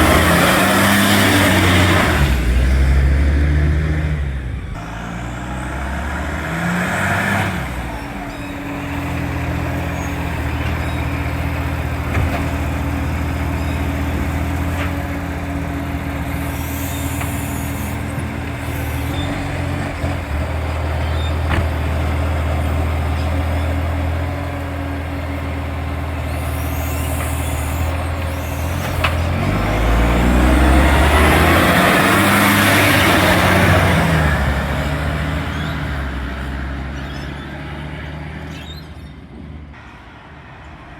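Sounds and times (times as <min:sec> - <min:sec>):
diesel engine with exhaust leak: 0:00.0 - 0:39.8
air hissing: 0:16.2 - 0:19.6, 0:26.2 - 0:29.4.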